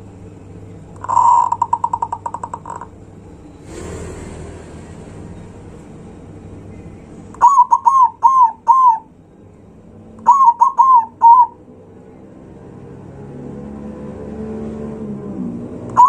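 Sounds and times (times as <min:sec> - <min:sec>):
dove cooing: 0:01.0 - 0:02.9, 0:07.4 - 0:09.1, 0:10.2 - 0:11.6.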